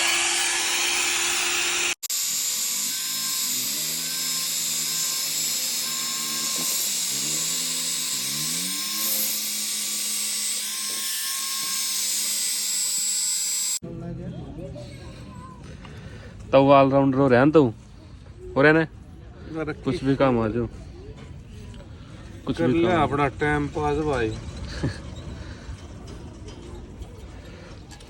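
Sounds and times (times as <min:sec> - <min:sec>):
angle grinder cutting steel pipe: 0:00.0 - 0:13.8.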